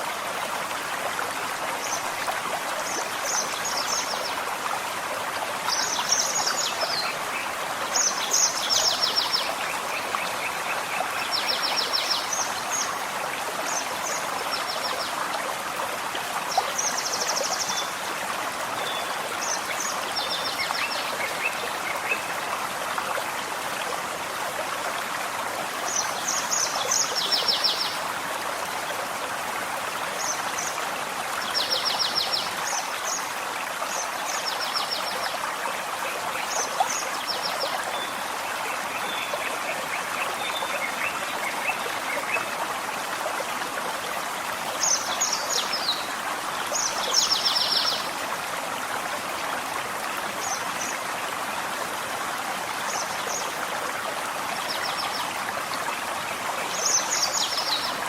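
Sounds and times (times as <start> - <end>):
stream running: 0.0 - 58.0.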